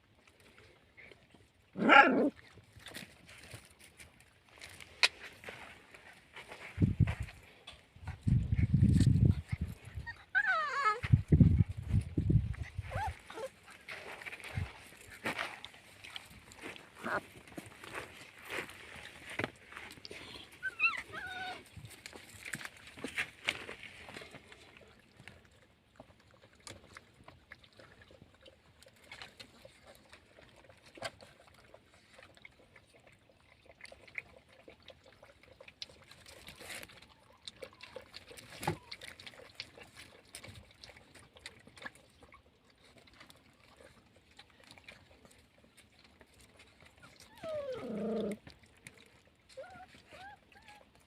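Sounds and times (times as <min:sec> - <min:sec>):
puppy whining: 0:09.3 - 0:11.3, 0:12.8 - 0:13.6, 0:20.6 - 0:21.8, 0:47.0 - 0:48.4, 0:49.5 - 0:51.0.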